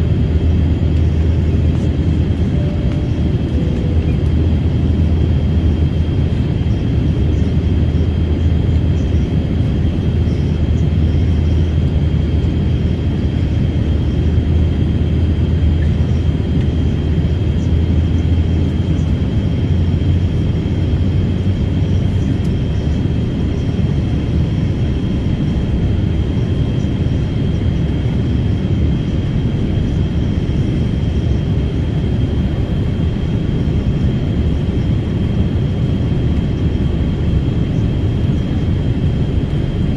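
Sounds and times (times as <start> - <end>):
deep low hum: 0.0 - 9.3
jet engine cabin rumble: 0.0 - 39.9.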